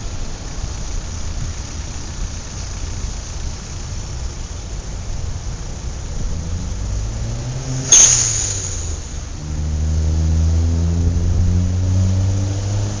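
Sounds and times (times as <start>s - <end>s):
vehicle engines running: 0.0s - 13.0s
vehicle pulling away: 5.0s - 13.0s
loud hiss: 7.8s - 9.3s.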